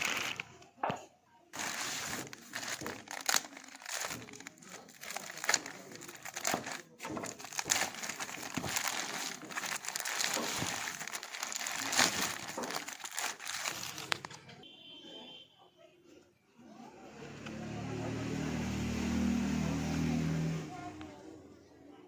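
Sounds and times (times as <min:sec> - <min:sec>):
packaging crinkling and rustling: 0:00.0 - 0:00.7, 0:01.6 - 0:14.6
sharp clicks and crackles: 0:02.4 - 0:14.6.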